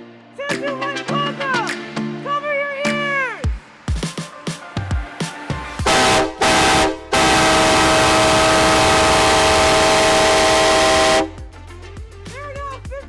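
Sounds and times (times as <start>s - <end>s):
train whistle blasts: 5.9s - 11.4s.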